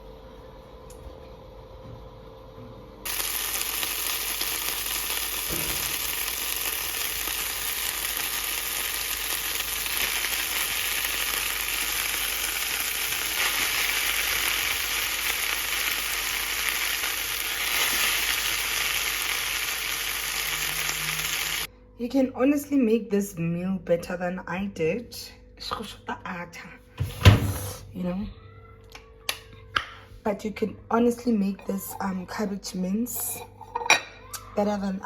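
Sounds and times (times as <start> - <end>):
food sizzling in a frying pan: 3.0 - 21.7.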